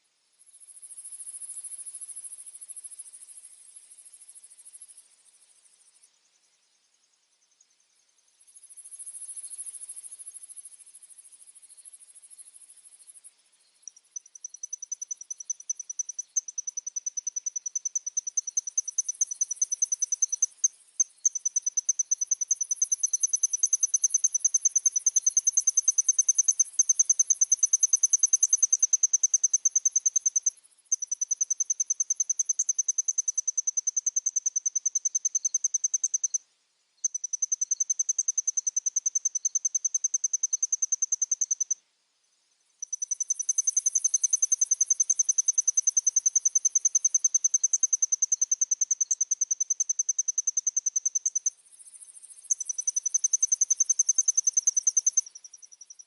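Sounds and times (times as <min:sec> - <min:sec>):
insect pulsing trill: 0:13.8 - 0:36.4, 0:42.8 - 0:56.0.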